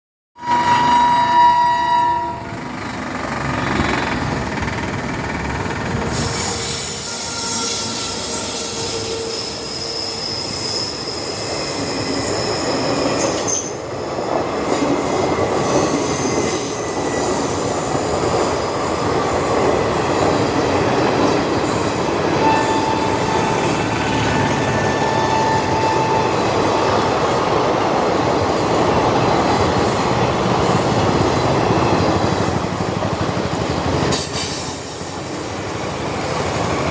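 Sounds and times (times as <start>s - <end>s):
train coaches rumbling over rails: 0.4s - 36.9s
wheel squeal: 6.0s - 13.8s, 15.4s - 18.5s, 21.6s - 26.6s.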